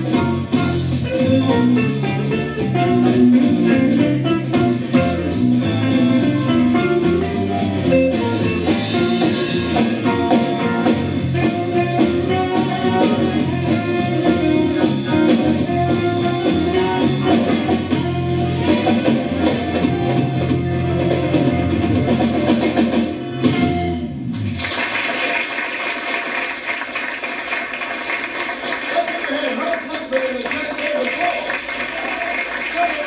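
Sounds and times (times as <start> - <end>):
guitar: 0.0 - 24.6
drum kit: 0.0 - 25.1
bass: 0.0 - 25.2.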